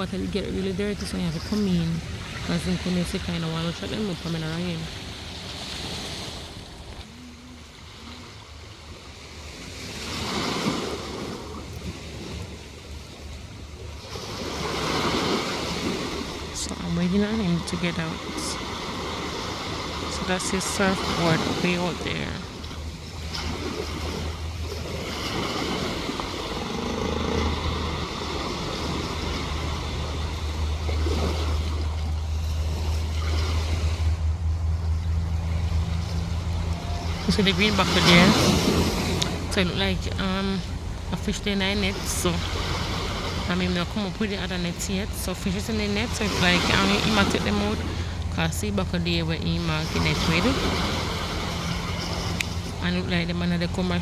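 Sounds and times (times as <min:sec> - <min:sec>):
ocean surf washing onto beach: 0:00.0 - 0:54.0
wind on microphone: 0:00.0 - 0:54.0
motor humming: 0:18.2 - 0:33.4, 0:46.2 - 0:54.0.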